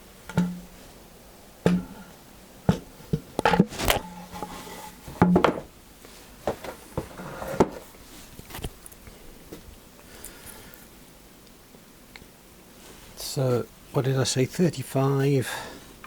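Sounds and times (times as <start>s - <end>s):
wooden boards knocking: 5.2s - 5.7s.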